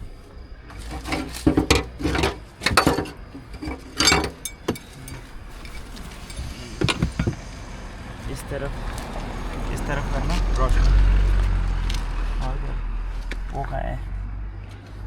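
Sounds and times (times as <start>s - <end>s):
metal tools clinking: 0.8s - 7.4s.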